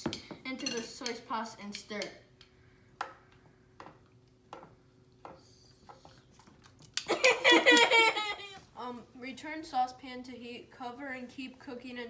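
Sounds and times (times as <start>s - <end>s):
child laughing: 7.1s - 8.7s.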